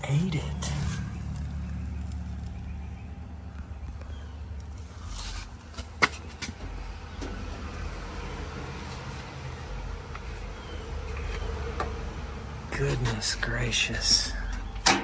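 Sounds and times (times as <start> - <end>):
steady low hum: 0.0 - 15.0
clicks and knocks of handled parts: 4.0 - 7.8.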